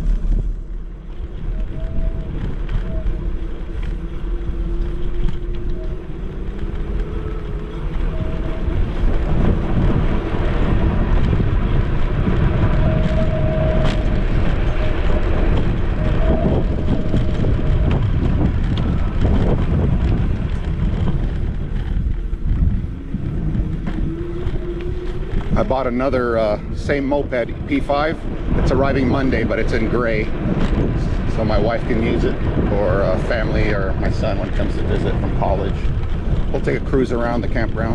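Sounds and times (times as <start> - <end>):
electric motor whine: 0.0 - 26.2
wind buffeting microphone: 0.0 - 37.9.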